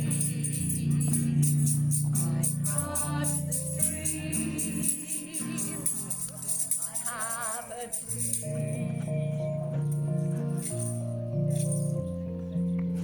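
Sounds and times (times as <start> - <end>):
pop song playing: 0.0 - 12.2
shaker rattling: 0.0 - 12.2.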